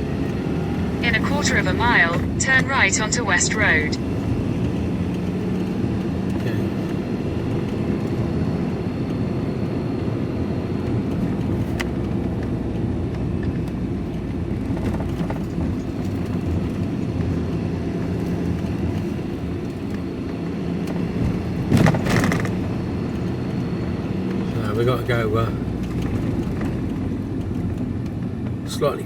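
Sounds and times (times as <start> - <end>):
van engine and tyre drone: 0.0 - 29.0
clatter: 10.8 - 23.6, 24.2 - 28.8.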